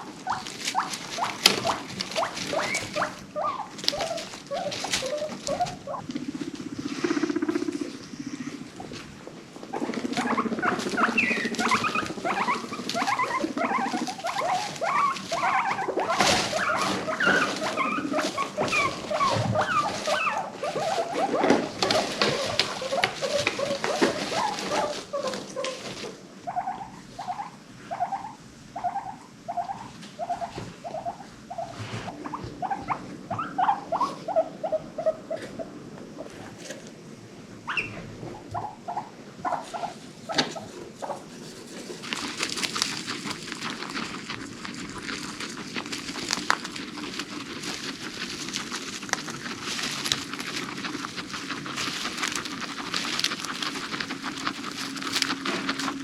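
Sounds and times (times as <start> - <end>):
guinea pigs squeaking: 0.0 - 37.0, 37.6 - 56.0
clicks and pattering: 41.8 - 56.0.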